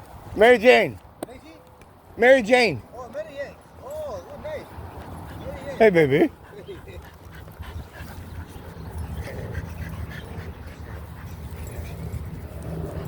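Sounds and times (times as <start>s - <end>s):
small dogs panting: 4.3s - 13.0s.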